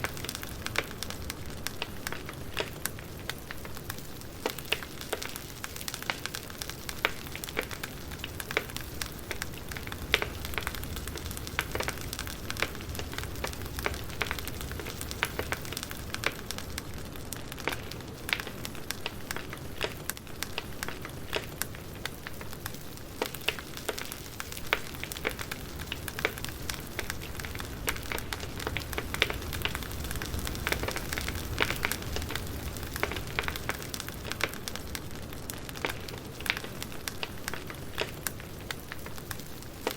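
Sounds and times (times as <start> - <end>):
wood crackling and popping: 0.0 - 39.9
steady low rumble: 8.9 - 17.3.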